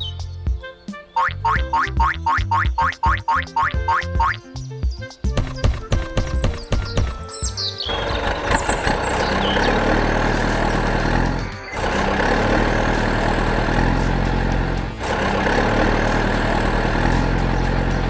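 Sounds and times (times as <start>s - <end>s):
heavy vehicle engine running: 7.9s - 18.0s.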